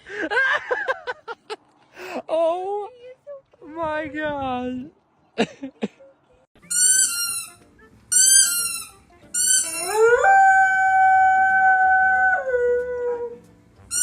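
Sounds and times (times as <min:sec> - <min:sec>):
dog yelping and howling: 0:09.7 - 0:13.4.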